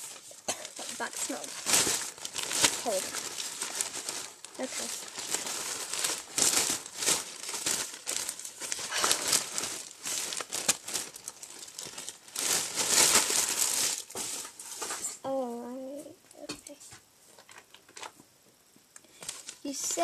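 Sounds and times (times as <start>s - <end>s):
plastic bag crinkling: 0.0s - 15.0s, 19.1s - 20.0s.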